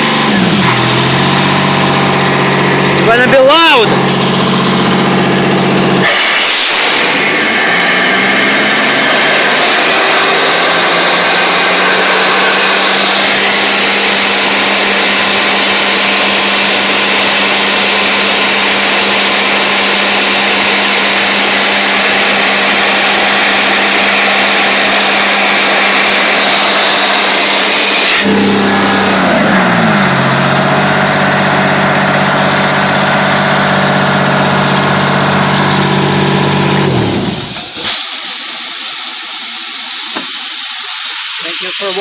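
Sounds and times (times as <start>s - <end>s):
diesel engine hum: 0.0s - 37.9s
compressed air blasting hiss: 6.0s - 7.7s, 37.7s - 42.0s.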